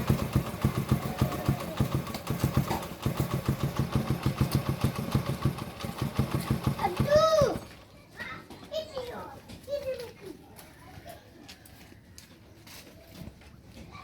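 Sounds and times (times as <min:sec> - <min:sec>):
engine idling: 0:00.0 - 0:07.8.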